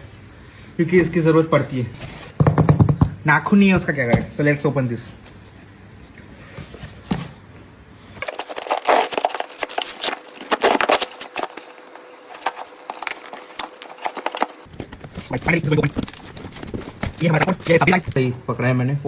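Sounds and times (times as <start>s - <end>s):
packaging crinkling and rustling: 8.2s - 18.2s.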